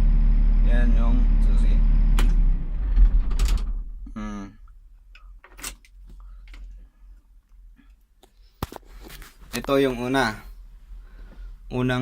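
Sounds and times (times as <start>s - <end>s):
diesel engine shutting off: 0.0s - 3.8s.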